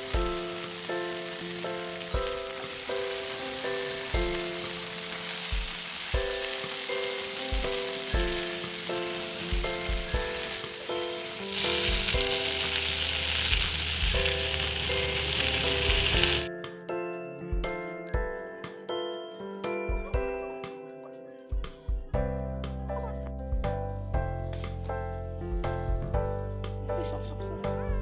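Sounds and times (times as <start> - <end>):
background music with steady beat: 0.0 - 4.8, 5.5 - 11.1, 15.0 - 28.0
loud even hiss: 0.0 - 16.5.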